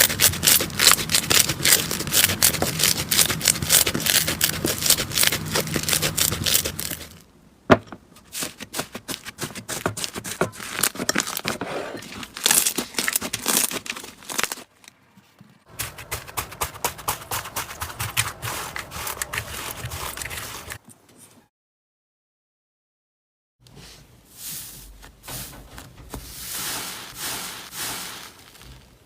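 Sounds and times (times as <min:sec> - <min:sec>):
slime crackling and popping: 0:00.0 - 0:07.2, 0:12.3 - 0:14.7.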